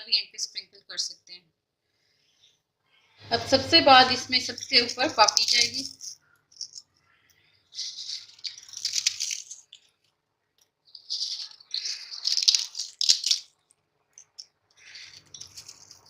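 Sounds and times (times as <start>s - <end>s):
crunchy fried pieces rattling: 4.4s - 6.9s, 7.8s - 10.0s, 10.9s - 16.0s.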